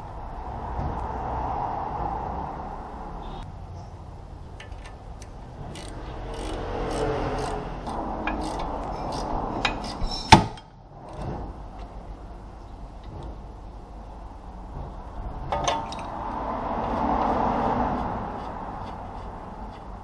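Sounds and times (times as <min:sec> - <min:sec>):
hand tool rubbing and scraping: 0:05.6 - 0:11.5, 0:16.1 - 0:20.0.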